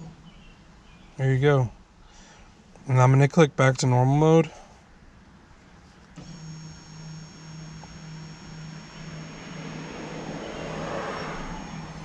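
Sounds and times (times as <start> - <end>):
brake motor electric whine: 6.2 - 12.0
pulsing hum: 6.2 - 12.0
rushing noise: 9.1 - 12.0.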